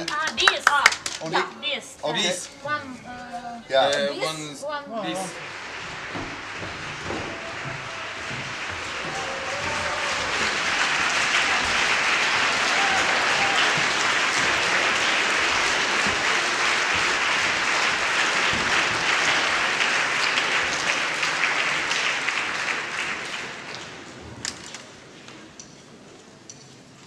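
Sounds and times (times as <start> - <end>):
audience applauding: 0.0 - 1.3, 5.1 - 24.1.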